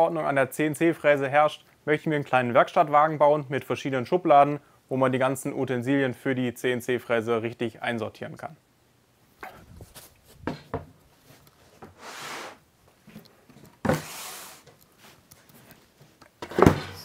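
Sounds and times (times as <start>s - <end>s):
handling knocks and clunks: 10.4s - 11.0s, 16.0s - 17.0s
short scraping sounds: 11.9s - 12.6s, 13.9s - 15.2s.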